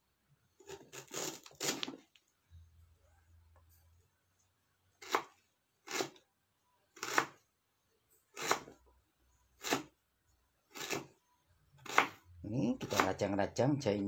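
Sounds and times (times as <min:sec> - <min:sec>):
knife chopping ginger: 0:05.0 - 0:06.2, 0:07.0 - 0:07.4, 0:08.4 - 0:08.8, 0:09.6 - 0:09.9, 0:10.7 - 0:11.1, 0:11.8 - 0:12.2, 0:12.8 - 0:13.4.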